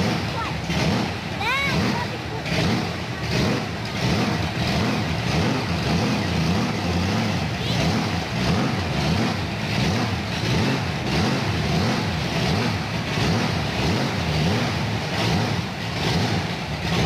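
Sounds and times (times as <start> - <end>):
truck engine revving: 0.0 - 17.0.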